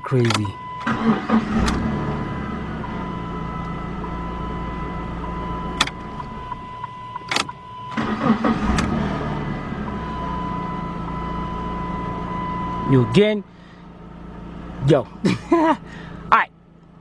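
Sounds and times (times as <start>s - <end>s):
car engine running: 0.1s - 17.0s
engine cranking and catching: 0.2s - 2.1s, 7.3s - 9.1s.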